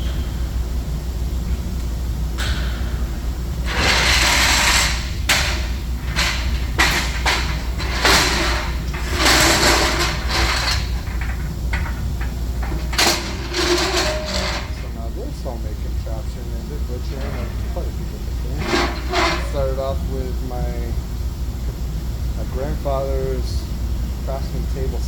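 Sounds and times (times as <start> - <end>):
steady low hum: 0.0 - 25.0
tools scraping and sliding: 3.7 - 15.6, 16.4 - 20.0
tools knocking and clanking: 3.7 - 20.0.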